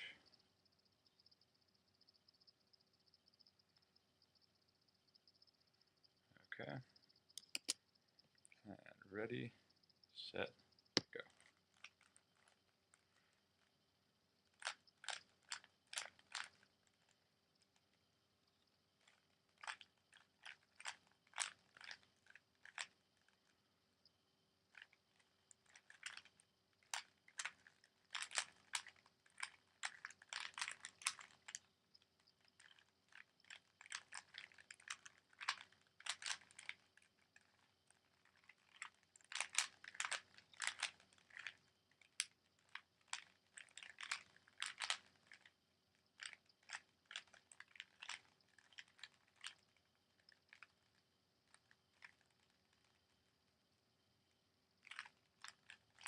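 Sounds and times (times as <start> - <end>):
puzzle cube plastic clicks: 6.6 - 7.8, 11.0 - 13.7, 14.4 - 18.0, 19.0 - 23.6, 24.7 - 53.2, 54.8 - 56.0.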